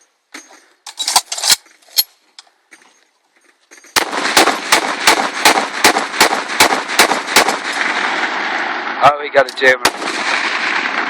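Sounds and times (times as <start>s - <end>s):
rapid gunfire: 4.0s - 8.2s.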